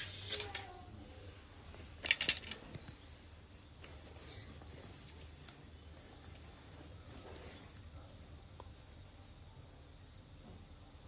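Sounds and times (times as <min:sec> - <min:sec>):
low steady room hum: 0:00.0 - 0:11.0.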